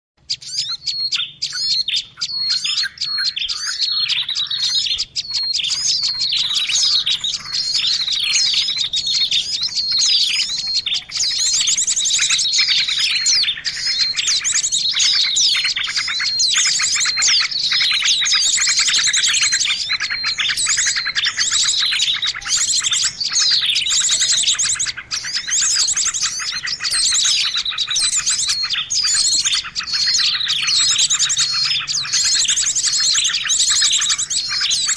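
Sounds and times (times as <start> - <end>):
birds chirping and trilling: 0.2 - 34.9.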